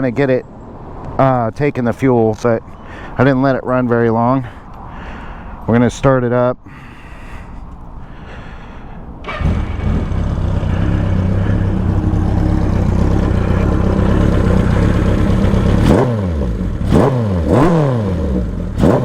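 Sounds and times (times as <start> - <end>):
motorcycle engine revving: 9.2 - 19.0
motorcycle engine starting and idling: 9.2 - 19.0.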